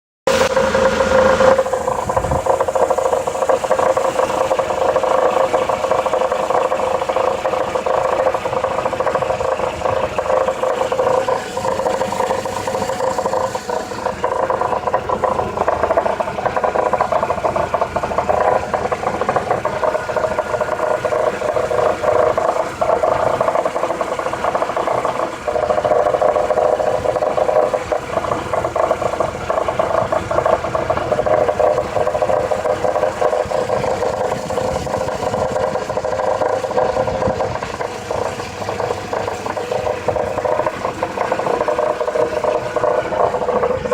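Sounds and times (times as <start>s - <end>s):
car engine rattle and whir: 0.3s - 43.9s.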